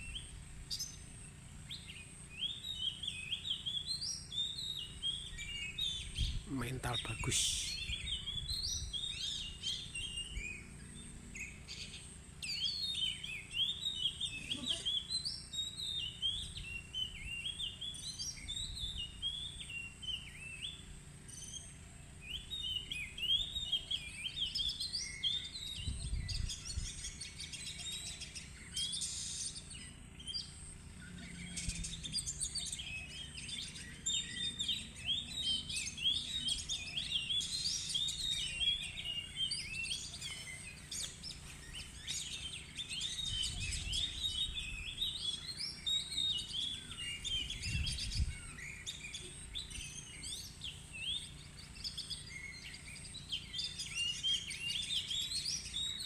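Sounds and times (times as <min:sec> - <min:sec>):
magpie-robin singing: 0:31.2 - 0:56.0.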